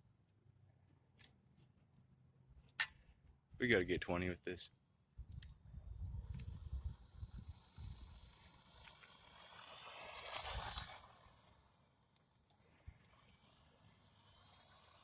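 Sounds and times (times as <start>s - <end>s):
toy truck motor whine: 6.0s - 15.0s.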